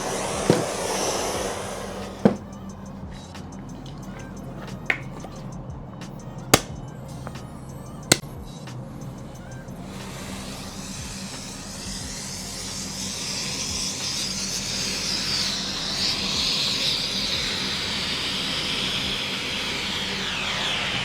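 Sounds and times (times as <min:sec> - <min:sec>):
fire extinguisher spraying hiss: 0:00.0 - 0:02.6, 0:09.7 - 0:21.0.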